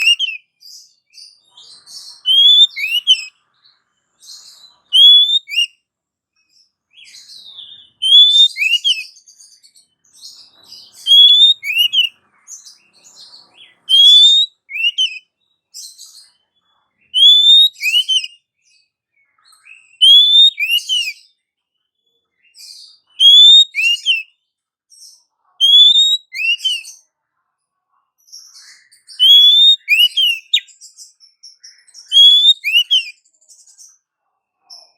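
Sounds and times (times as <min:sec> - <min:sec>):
bird whistled calls: 0:00.0 - 0:00.5, 0:01.9 - 0:03.3, 0:04.9 - 0:05.7, 0:07.0 - 0:09.2, 0:10.8 - 0:12.1, 0:13.6 - 0:15.3, 0:17.1 - 0:18.4, 0:19.7 - 0:21.3, 0:23.2 - 0:24.3, 0:25.6 - 0:27.0, 0:29.1 - 0:30.8, 0:31.7 - 0:33.2.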